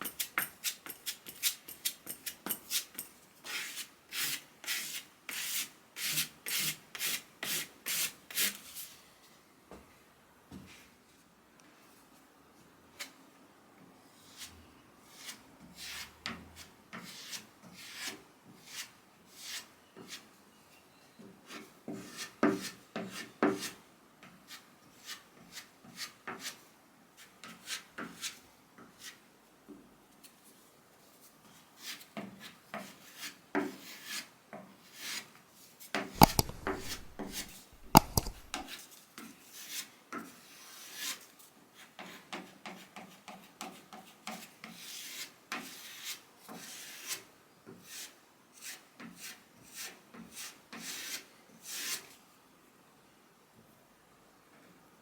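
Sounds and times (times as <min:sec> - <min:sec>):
hand rubbing wood: 0:36.2 - 0:38.7.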